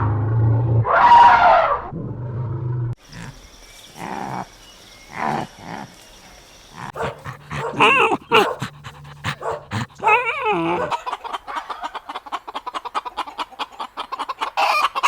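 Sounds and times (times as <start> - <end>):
animal roar-like call: 6.8 - 11.0.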